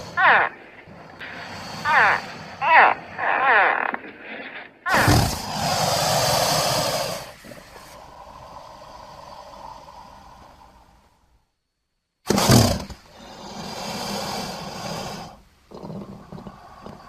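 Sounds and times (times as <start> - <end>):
chirp-like calls: 0.0 - 11.2
harsh hissing roar: 0.0 - 11.4, 12.3 - 17.0.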